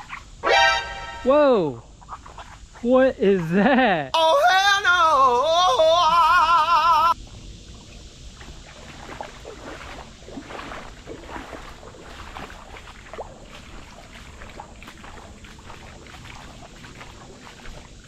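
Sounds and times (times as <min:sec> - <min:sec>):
light water splashes: 0:07.2 - 0:18.0.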